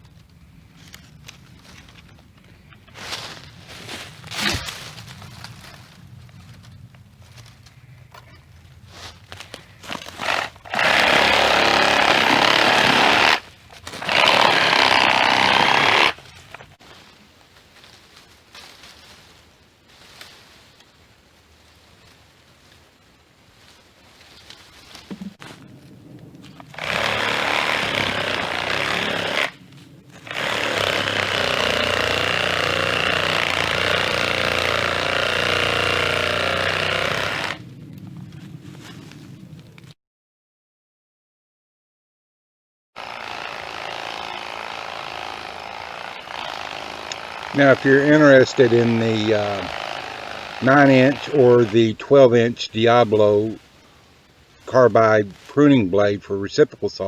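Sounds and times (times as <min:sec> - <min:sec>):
power saw cutting wood: 0:09.9 - 0:16.2, 0:26.7 - 0:29.6, 0:30.2 - 0:37.6, 0:43.0 - 0:51.9.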